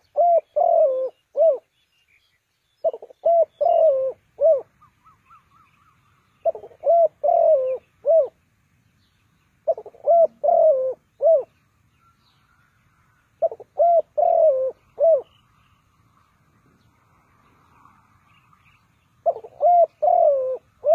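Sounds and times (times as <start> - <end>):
dove cooing: 0.0 - 1.7, 2.8 - 8.4, 9.6 - 11.6, 13.4 - 15.4, 19.2 - 20.9
faint high chirping: 0.0 - 20.9.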